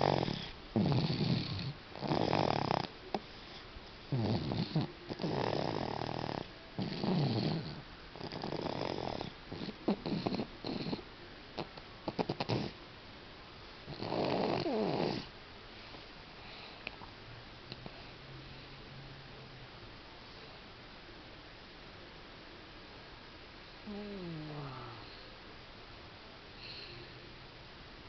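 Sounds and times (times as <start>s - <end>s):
baby snoring: 0.0s - 11.0s, 11.6s - 12.8s, 13.9s - 15.3s, 23.9s - 25.2s.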